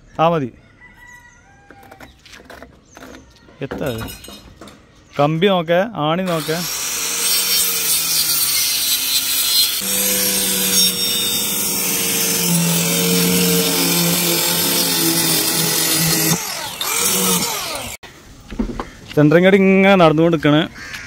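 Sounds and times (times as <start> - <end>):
power saw cutting wood: 6.3 - 18.0.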